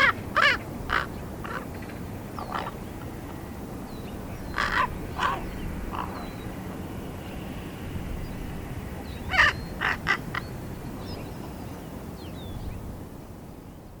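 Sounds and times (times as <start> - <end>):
raven calling: 0.0 - 3.1, 4.4 - 6.5, 9.2 - 10.6.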